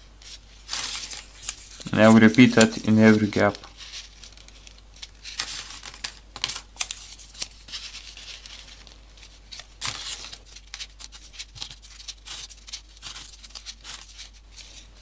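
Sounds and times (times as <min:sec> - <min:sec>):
paper clicks and rustling: 0:00.2 - 0:15.0.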